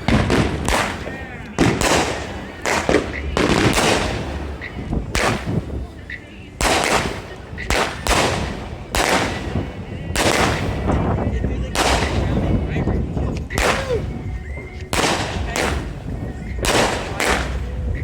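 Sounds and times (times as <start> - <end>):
fireworks booming with echoing rumble: 0.0 - 18.0.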